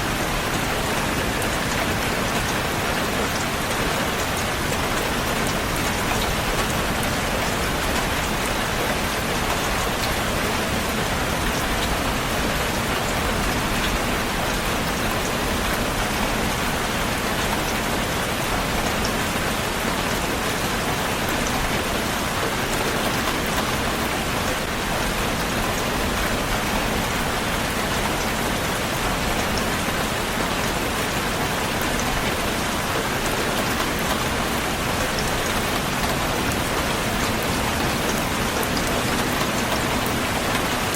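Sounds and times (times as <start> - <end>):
heavy rain: 0.0 - 40.9.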